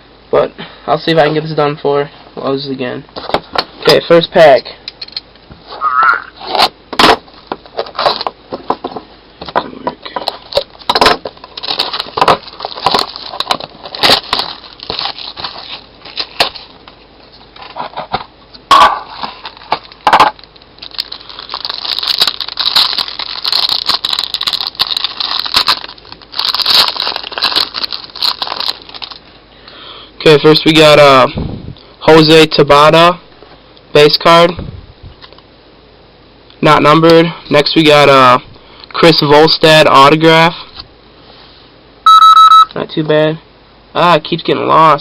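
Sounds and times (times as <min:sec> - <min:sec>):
wrapper crinkling: 0:07.6 - 0:08.3, 0:10.3 - 0:16.8, 0:19.2 - 0:29.3.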